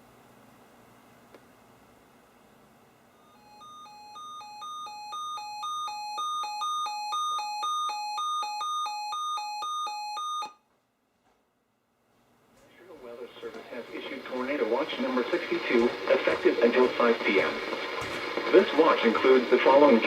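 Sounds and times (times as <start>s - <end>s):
alternating alarm beep tones: 3.2s - 10.6s.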